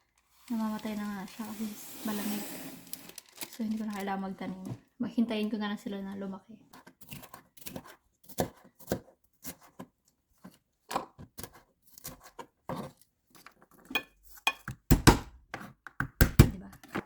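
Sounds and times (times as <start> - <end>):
knife cutting food: 6.7 - 13.0.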